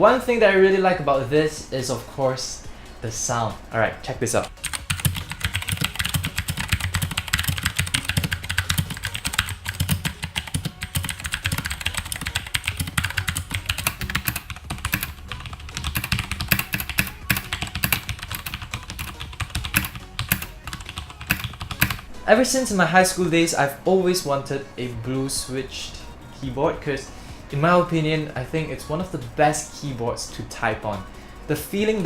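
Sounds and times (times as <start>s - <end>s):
mechanical keyboard typing: 4.5s - 22.1s.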